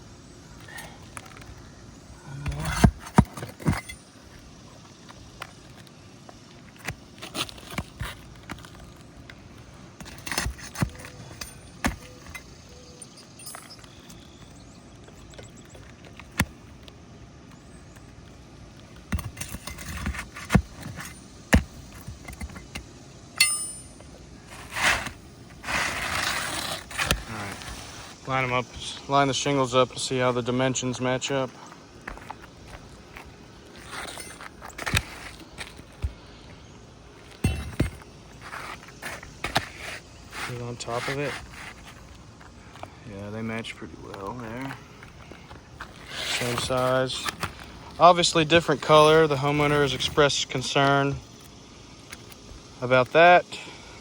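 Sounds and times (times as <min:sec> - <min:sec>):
pry tool scraping roof shingles: 0:02.3 - 0:04.5, 0:06.7 - 0:14.3, 0:19.0 - 0:28.3, 0:31.6 - 0:36.2, 0:37.2 - 0:42.2, 0:45.8 - 0:47.8.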